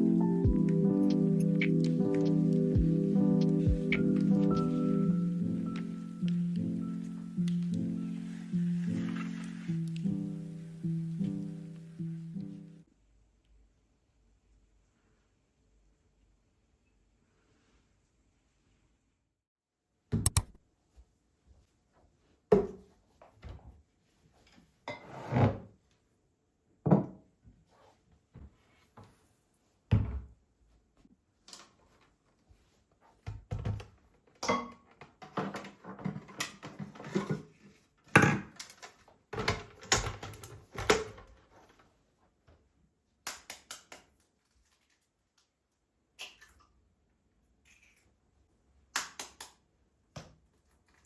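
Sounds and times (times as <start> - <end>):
quick clicks: 20.2 - 20.6
objects knocking and thunking: 33.2 - 41.6
objects clattering: 34.4 - 41.7.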